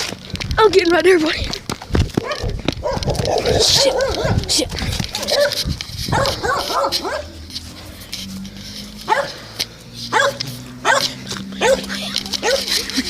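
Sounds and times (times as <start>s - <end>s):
dog barking: 2.2s - 4.6s, 5.2s - 7.4s, 9.1s - 9.4s, 10.1s - 12.7s.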